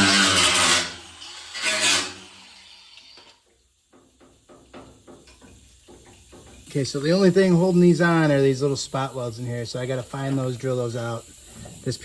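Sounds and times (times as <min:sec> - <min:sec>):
power tool on sheet metal: 0:00.0 - 0:03.4.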